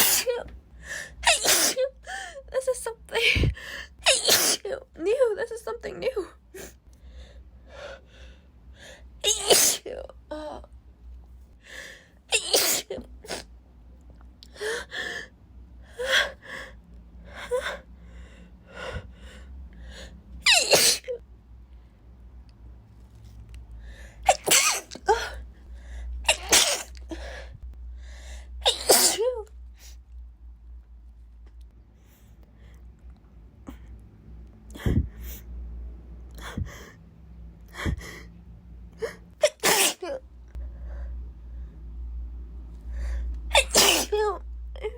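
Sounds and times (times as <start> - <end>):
woman sneezing: 0.0 - 0.5, 1.2 - 2.0, 3.2 - 4.7, 9.2 - 9.9, 12.3 - 13.4, 20.5 - 21.1, 24.3 - 25.4, 26.3 - 27.0, 28.6 - 29.4, 39.5 - 40.2, 43.5 - 44.3
woman gasping breaths: 0.8 - 1.2, 3.2 - 4.0, 36.4 - 37.0.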